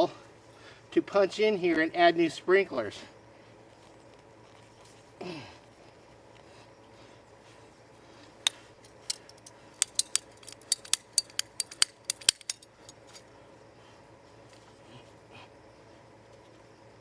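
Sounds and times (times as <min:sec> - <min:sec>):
hand tools clicking and snipping: 0:08.4 - 0:13.2.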